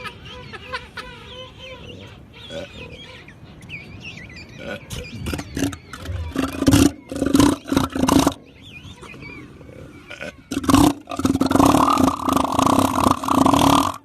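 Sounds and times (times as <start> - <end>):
elephant seal belching: 4.6 - 8.4, 9.7 - 14.0.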